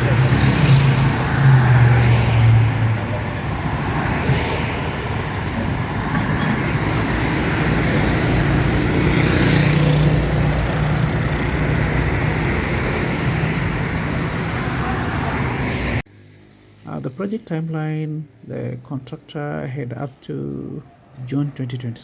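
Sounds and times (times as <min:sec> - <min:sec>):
vehicle passing close: 0:00.0 - 0:16.7
road traffic: 0:00.0 - 0:22.0.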